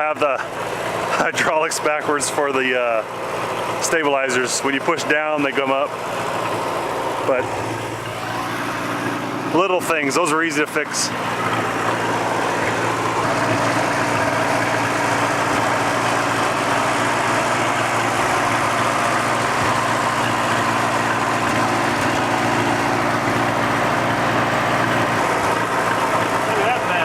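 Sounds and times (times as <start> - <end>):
tractor engine idling: 0.0 - 27.0.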